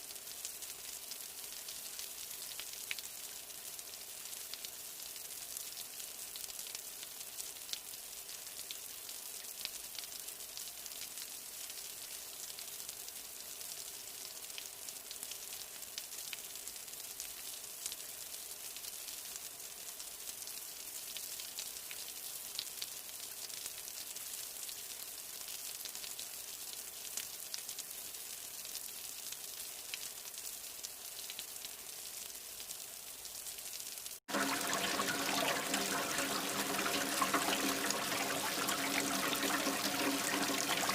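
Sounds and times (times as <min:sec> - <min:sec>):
steady rain: 0:00.0 - 0:40.9
running water rushing: 0:34.3 - 0:40.9.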